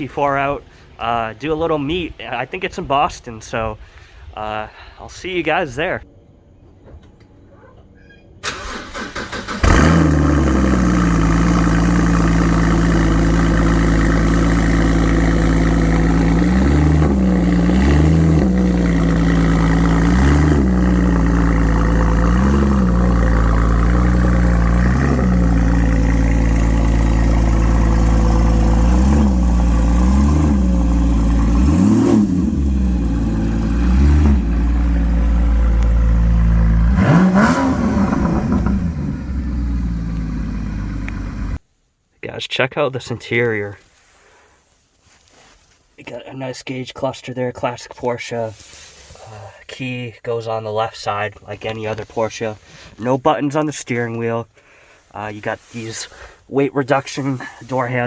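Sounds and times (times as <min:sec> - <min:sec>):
car engine starting and idling: 0:08.4 - 0:41.6
engine throttle blips: 0:08.4 - 0:41.6.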